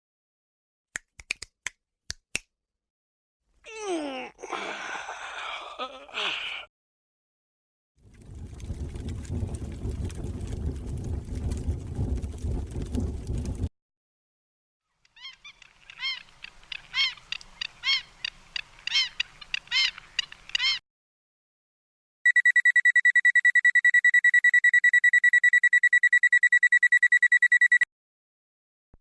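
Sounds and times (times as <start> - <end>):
rapid electronic beeping: 22.3 - 27.8
short chirps: 22.3 - 27.8.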